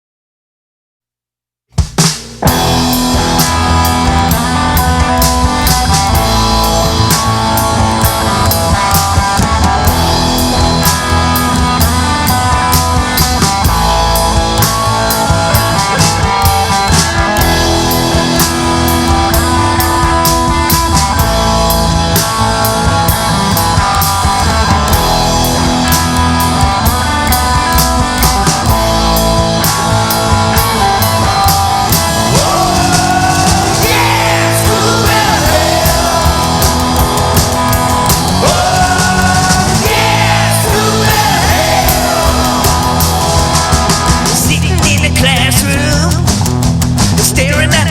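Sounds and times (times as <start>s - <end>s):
drum kit beat: 1.7s - 47.9s
rock band playing: 1.7s - 47.9s.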